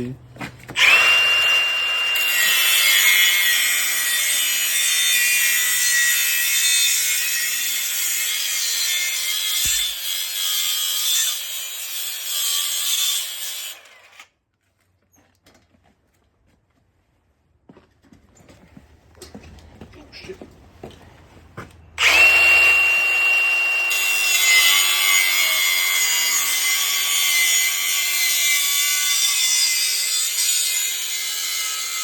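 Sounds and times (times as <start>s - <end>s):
angle grinder cutting metal: 0.8s - 14.2s, 22.0s - 32.0s.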